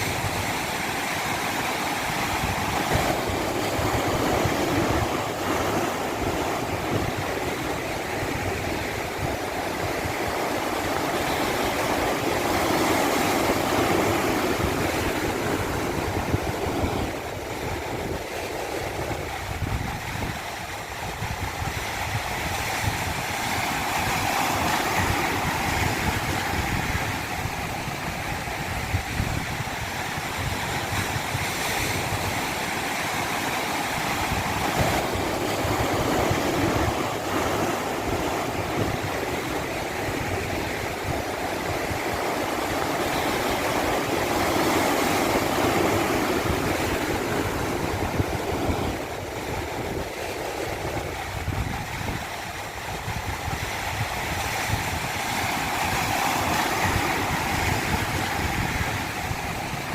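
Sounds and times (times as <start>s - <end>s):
running water rushing: 0.0s - 59.9s.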